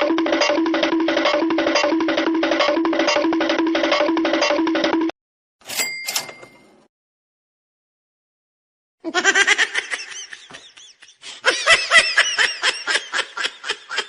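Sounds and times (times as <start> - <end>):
high-pitched voice laughing: 9.0 - 14.0.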